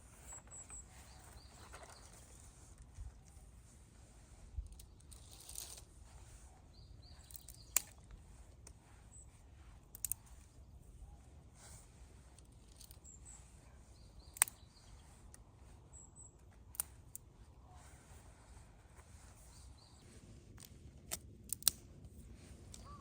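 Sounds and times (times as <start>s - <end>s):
faint distant bird chirps: 0.0s - 3.5s, 4.7s - 20.2s, 22.4s - 23.0s
sharp clicks or snaps: 20.6s - 21.9s.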